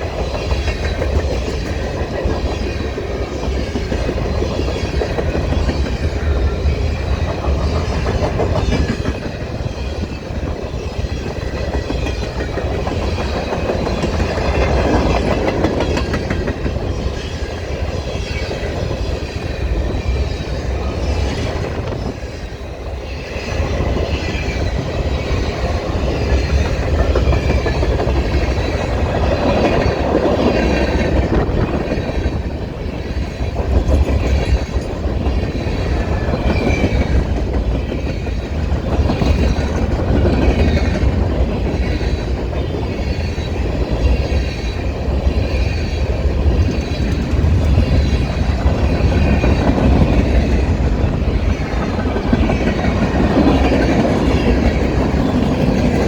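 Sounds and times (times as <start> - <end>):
train wheels clattering over rail joints: 0.0 - 22.2
wind buffeting microphone: 0.0 - 56.0.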